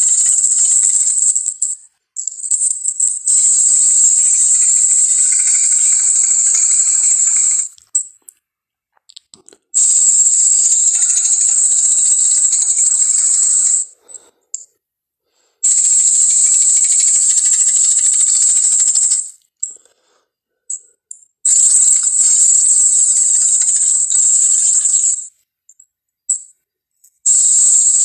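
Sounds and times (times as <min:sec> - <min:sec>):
creature rattling hiss: 0:00.0 - 0:01.7, 0:02.3 - 0:07.8, 0:09.8 - 0:13.9, 0:15.6 - 0:19.3, 0:21.5 - 0:25.3.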